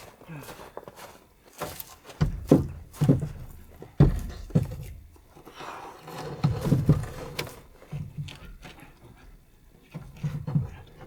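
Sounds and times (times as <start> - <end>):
dull thuds and knocks: 2.1 - 5.2.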